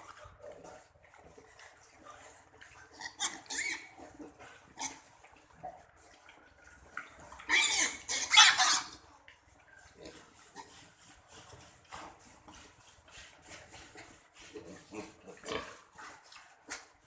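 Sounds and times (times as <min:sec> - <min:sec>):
piglet squealing: 0:03.0 - 0:03.9, 0:07.5 - 0:09.0.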